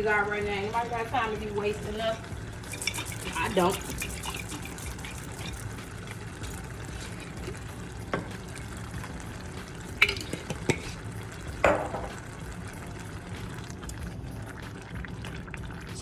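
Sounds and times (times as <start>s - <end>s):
low sizzle: 0.0s - 16.0s
spoon stirring sauce in a pot: 1.9s - 15.7s
spoon knocking against pot: 11.6s - 12.2s.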